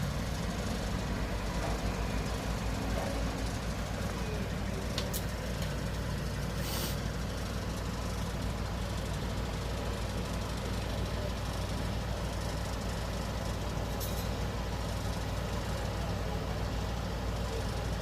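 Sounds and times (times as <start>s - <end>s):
diesel engine idling: 0.0s - 18.0s
short hiss: 6.6s - 7.0s.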